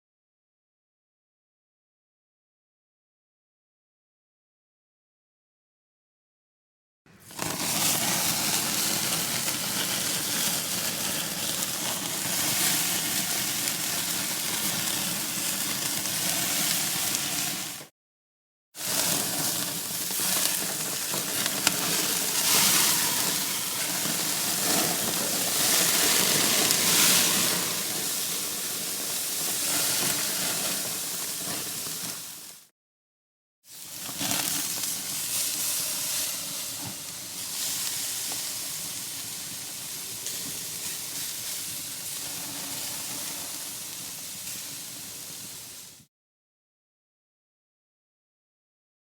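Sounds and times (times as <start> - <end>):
steak sizzling: 7.3 - 17.9, 18.8 - 32.6, 33.7 - 45.9.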